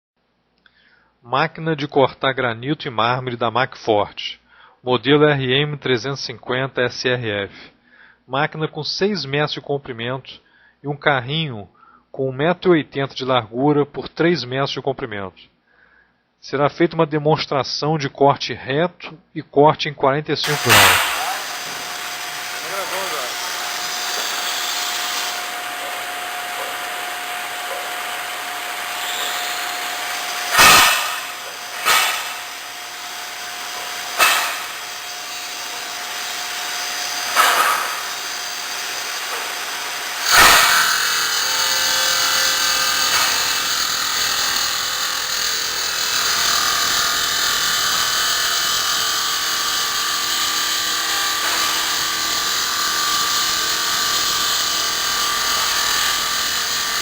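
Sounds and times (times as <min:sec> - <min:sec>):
short loud bursts: 0:20.4 - 0:43.8
stone-cutting saw running: 0:20.4 - 0:57.0.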